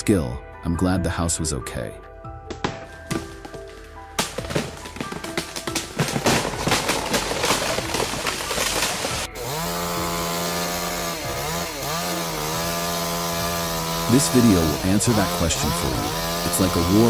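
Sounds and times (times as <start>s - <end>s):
cracks and knocks: 2.5s - 9.3s
chainsaw engine running: 4.6s - 17.0s.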